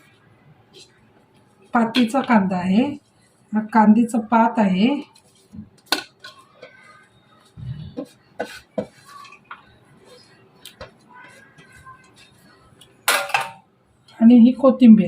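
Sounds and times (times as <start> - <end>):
bowls and utensils clinking: 13.1 - 13.7.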